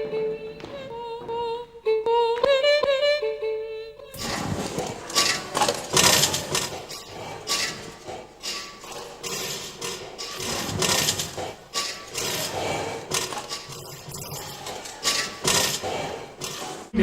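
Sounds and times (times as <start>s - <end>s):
irregular clattering and knocking: 4.2s - 16.9s
scraping noise: 4.2s - 17.0s.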